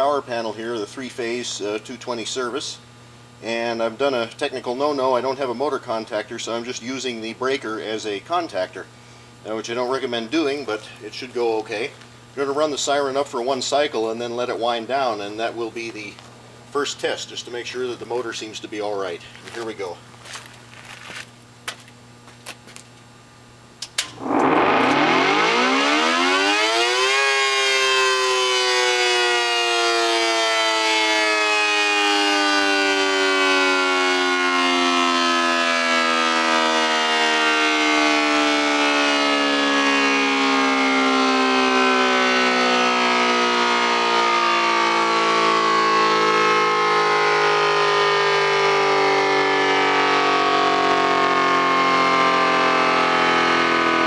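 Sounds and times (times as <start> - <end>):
air raid siren wailing: 24.1 - 54.0.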